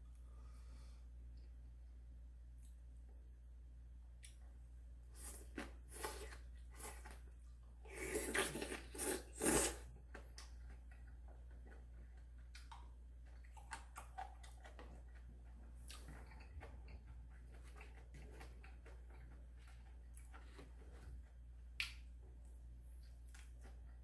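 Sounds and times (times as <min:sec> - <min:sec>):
person eating noodles: 0:05.2 - 0:07.2, 0:07.9 - 0:11.8.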